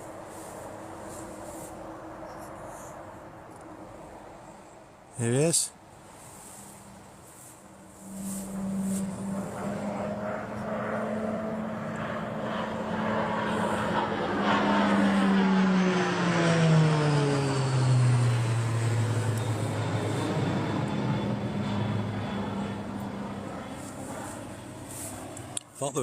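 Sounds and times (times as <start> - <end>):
faint high turbine whine: 0.0 - 26.0
propeller plane drone: 0.0 - 26.0.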